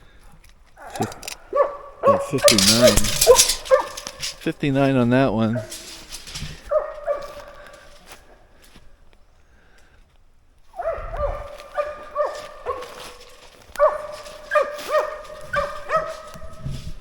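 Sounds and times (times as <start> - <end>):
dog barking: 0.8 - 4.3, 5.5 - 5.9, 6.6 - 7.9, 10.8 - 16.7.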